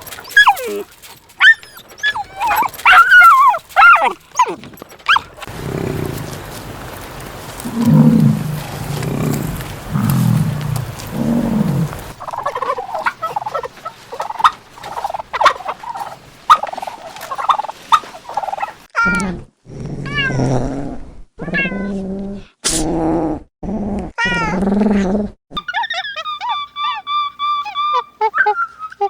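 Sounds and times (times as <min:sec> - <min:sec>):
drawn-out pitch-bending animal calls: 0:00.0 - 0:18.8, 0:25.6 - 0:29.0
short chattering animal calls: 0:00.0 - 0:18.8.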